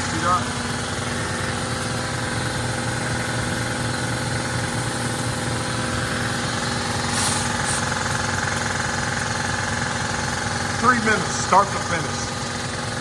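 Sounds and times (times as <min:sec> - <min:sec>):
vehicle engine idling: 0:00.0 - 0:13.0
short high hiss: 0:07.0 - 0:08.2.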